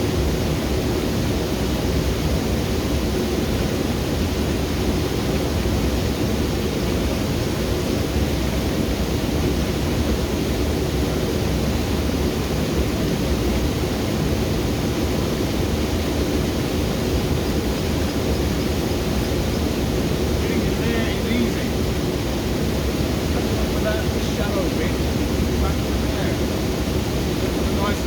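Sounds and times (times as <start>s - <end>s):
waterfall rushing: 0.1s - 28.0s.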